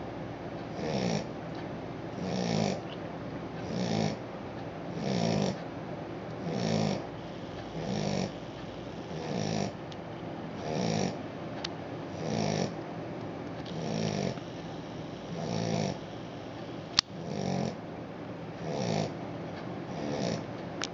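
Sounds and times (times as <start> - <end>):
puppy snoring: 0.7 - 1.4, 2.1 - 3.0, 3.6 - 4.2, 4.9 - 5.6, 6.4 - 9.8, 10.6 - 11.2, 12.1 - 12.8, 13.6 - 17.8, 18.6 - 19.2, 19.9 - 20.5
sharp click: 16.9 - 17.2.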